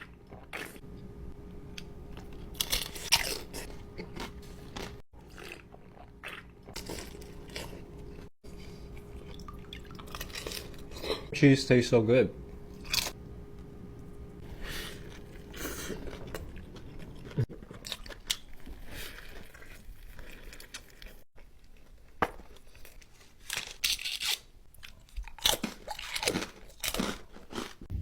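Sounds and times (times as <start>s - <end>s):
chewing and crunching food: 1.7s - 11.3s, 14.0s - 27.9s.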